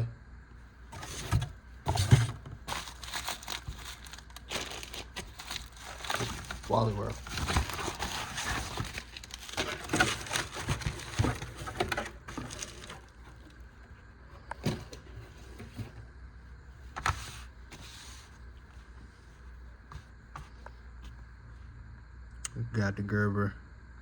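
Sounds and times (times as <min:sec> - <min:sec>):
plastic bag rustling: 0:00.8 - 0:16.0.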